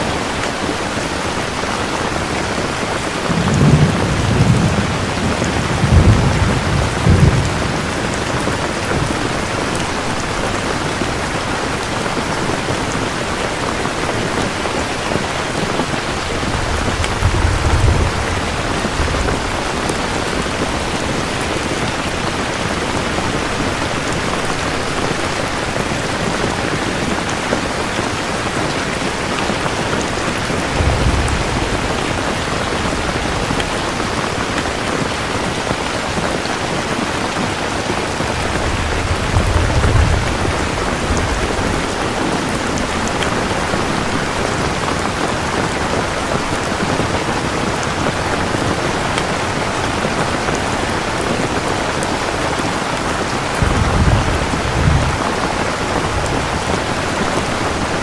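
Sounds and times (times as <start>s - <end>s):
steady rain: 0.0s - 58.0s
rolling thunder: 3.1s - 11.9s, 14.8s - 23.8s, 30.0s - 35.0s, 38.0s - 46.1s, 52.3s - 58.0s.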